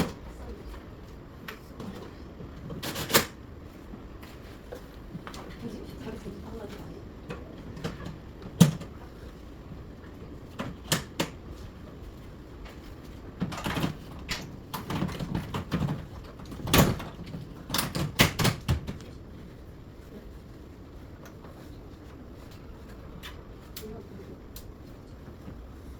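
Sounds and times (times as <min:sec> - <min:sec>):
air conditioner parts clicking and knocking: 0:00.0 - 0:25.9.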